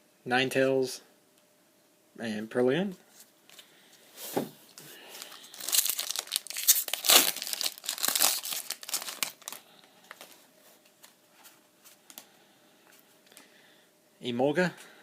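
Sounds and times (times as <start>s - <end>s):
foil wrapper tearing and crinkling: 5.2s - 10.3s.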